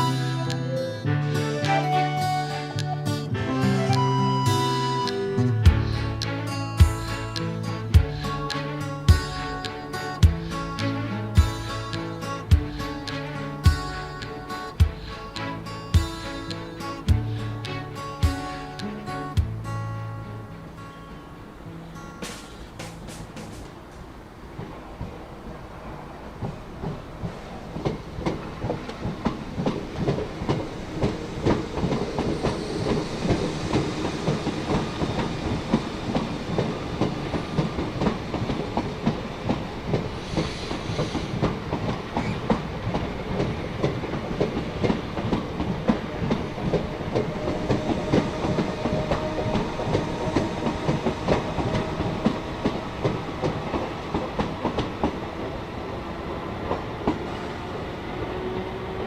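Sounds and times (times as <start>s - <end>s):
brief hiss: 22.2s - 23.8s, 40.2s - 41.4s
train wheels clattering over rails: 22.2s - 59.0s.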